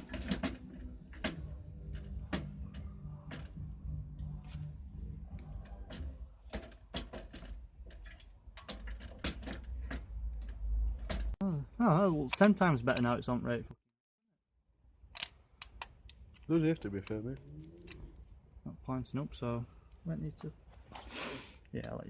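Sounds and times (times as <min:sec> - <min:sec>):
clicks and knocks of engine handling: 0:05.9 - 0:11.4.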